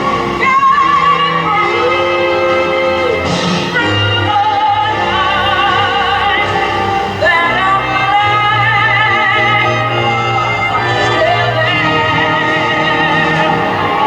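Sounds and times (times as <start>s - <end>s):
musical accompaniment: 0.0s - 14.0s
operatic voice singing: 0.0s - 14.0s.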